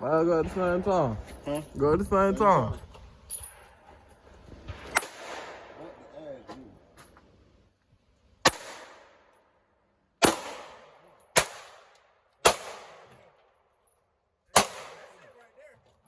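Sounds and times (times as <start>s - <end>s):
gunshots with echo: 4.8s - 6.0s, 8.4s - 9.2s, 10.2s - 13.1s, 14.6s - 15.2s.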